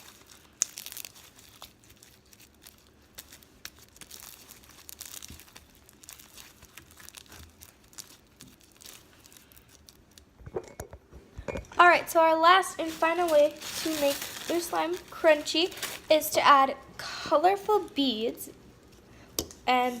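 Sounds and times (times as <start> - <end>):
slime crackling and popping: 0.0 - 10.4, 12.5 - 16.4.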